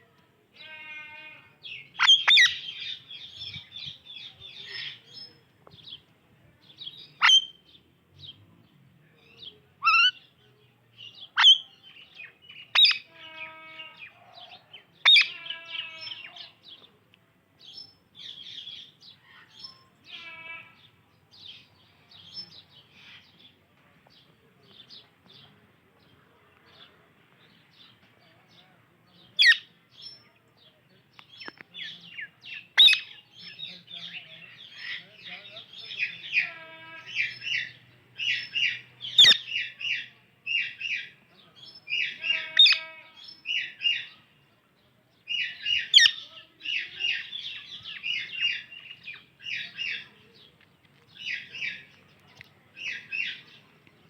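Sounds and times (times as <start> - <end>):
harsh rasping bird calls: 0.6 - 3.8, 7.0 - 7.7, 9.8 - 10.3, 11.4 - 16.6, 18.2 - 21.0, 32.1 - 41.2, 41.9 - 44.2, 45.3 - 50.1.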